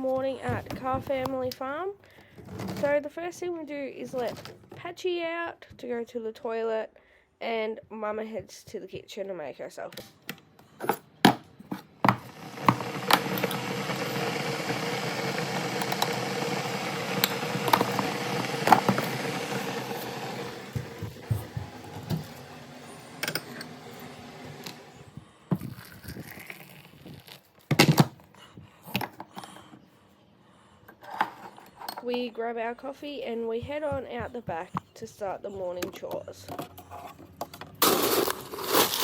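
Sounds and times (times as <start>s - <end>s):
kitchen appliance running: 11.7s - 27.0s.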